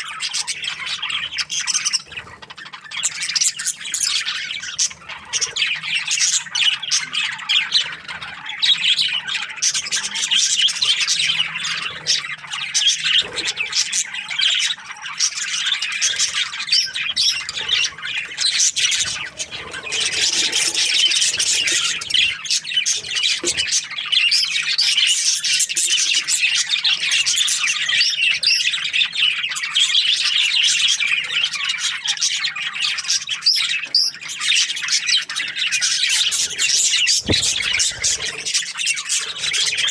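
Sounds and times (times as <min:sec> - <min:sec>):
budgerigars chirping and squawking: 0:00.0 - 0:39.9.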